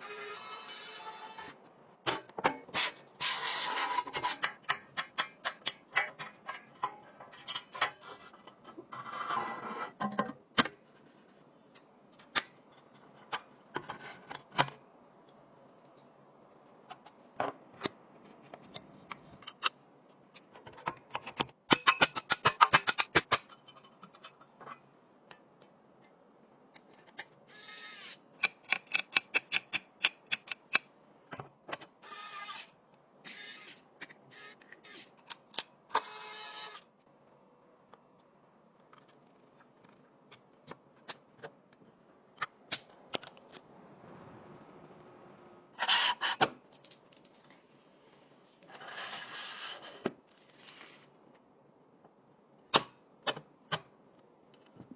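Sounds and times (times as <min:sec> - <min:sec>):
rustling and scraping: 0:46.7 - 0:51.2.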